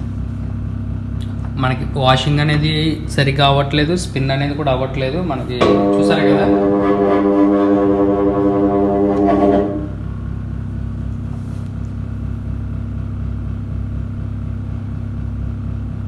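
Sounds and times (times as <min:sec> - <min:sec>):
washing machine humming: 0:00.0 - 0:15.2.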